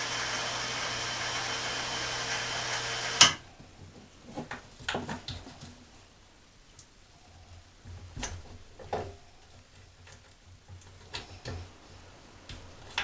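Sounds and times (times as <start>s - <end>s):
electric hoist motor running: 0.0s - 3.4s.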